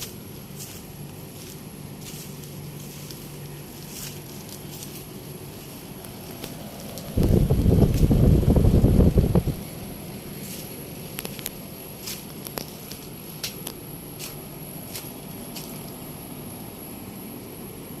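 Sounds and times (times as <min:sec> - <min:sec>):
air conditioner unit humming: 0:00.0 - 0:18.0
light clicks and crackles: 0:10.5 - 0:14.4.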